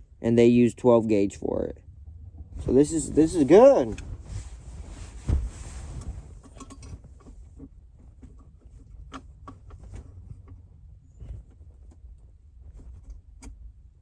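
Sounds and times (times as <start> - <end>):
wire handling clicks and rustling: 2.4 - 13.6
thump: 5.2 - 5.6.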